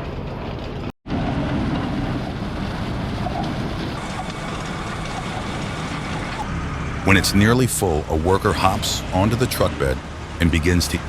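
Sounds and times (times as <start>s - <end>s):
conveyor running: 0.0s - 11.0s
excavator running: 0.0s - 11.0s.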